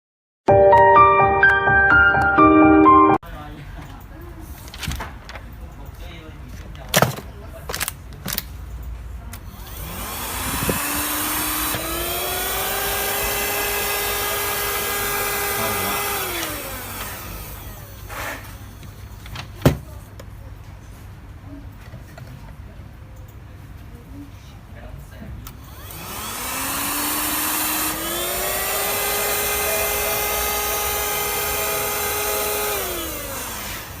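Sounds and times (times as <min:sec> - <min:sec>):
handheld vacuum cleaner whining: 0:09.5 - 0:18.9, 0:25.6 - 0:34.0.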